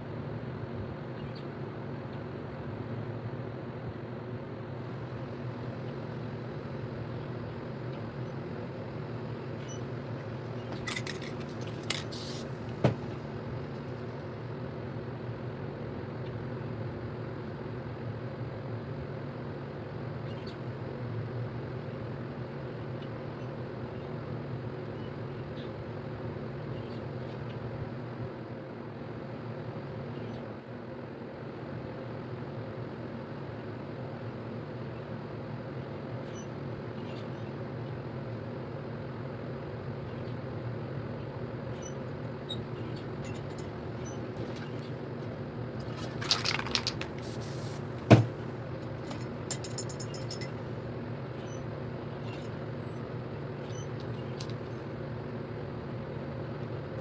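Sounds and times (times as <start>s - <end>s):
short hiss: 12.1s - 12.6s, 47.2s - 47.9s.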